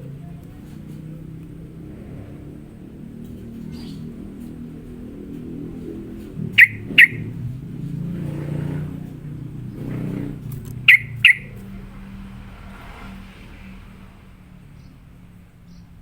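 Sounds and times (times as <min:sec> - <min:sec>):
bird call notes: 0:06.4 - 0:07.5, 0:10.8 - 0:11.7.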